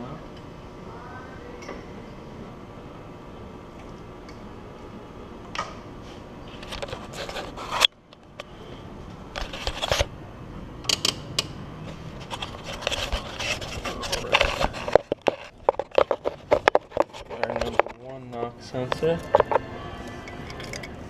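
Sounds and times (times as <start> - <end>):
wiring harness rustling and scraping: 6.0 - 7.9, 9.4 - 10.1, 11.9 - 18.2.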